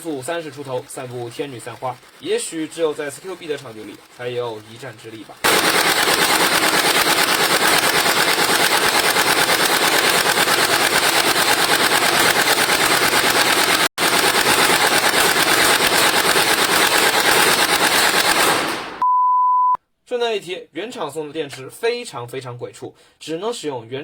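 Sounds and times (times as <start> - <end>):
gel blaster firing full auto: 0.0 - 19.0.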